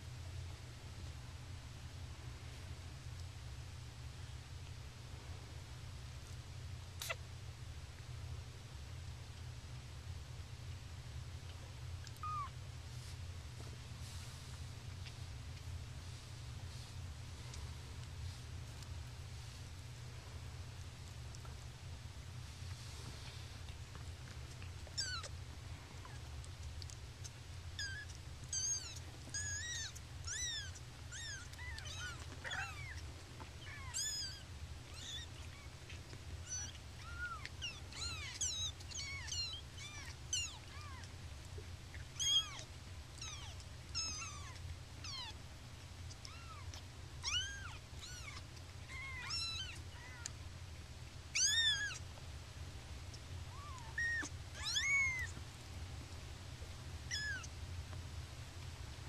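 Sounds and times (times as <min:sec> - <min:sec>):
kittens mewing: 0:07.0 - 0:07.3, 0:12.0 - 0:12.6, 0:24.8 - 0:25.4, 0:27.2 - 0:41.1, 0:42.0 - 0:45.4, 0:46.1 - 0:50.4, 0:51.3 - 0:52.0, 0:53.5 - 0:55.4, 0:57.1 - 0:57.5.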